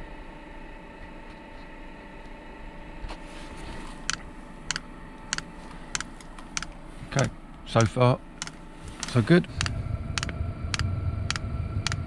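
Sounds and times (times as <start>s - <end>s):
heater humming: 0.0s - 12.0s
fuel pump ticking: 7.8s - 12.0s
thin blower tone: 8.7s - 12.0s.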